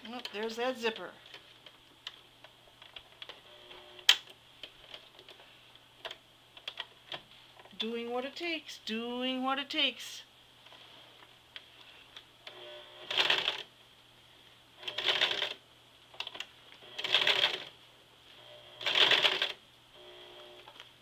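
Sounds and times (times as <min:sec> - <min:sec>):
sewing machine stitching: 0:14.8 - 0:15.6, 0:16.9 - 0:17.7, 0:18.8 - 0:19.6.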